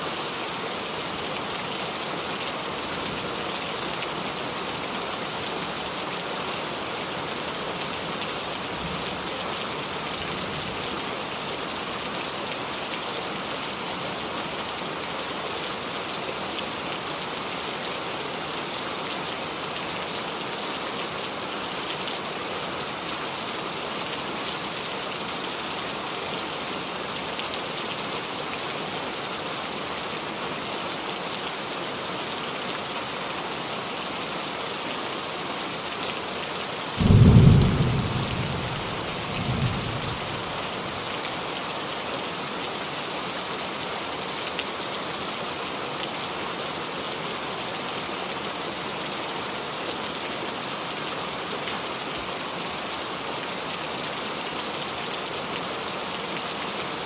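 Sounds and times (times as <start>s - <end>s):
rain falling on a roof: 0.0s - 57.0s
thunderclap rumbling: 37.0s - 40.2s.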